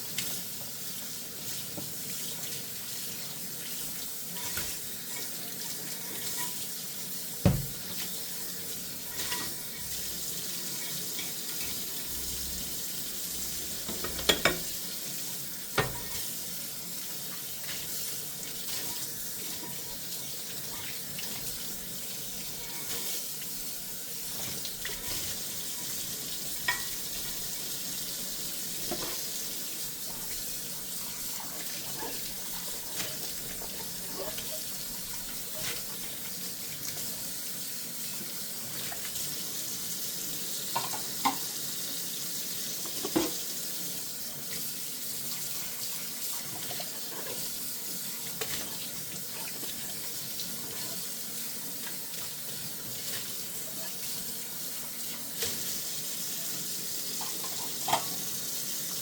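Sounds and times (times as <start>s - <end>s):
tap water running into sink: 0.0s - 59.0s
dishware knocks: 7.5s - 7.8s, 13.9s - 14.6s.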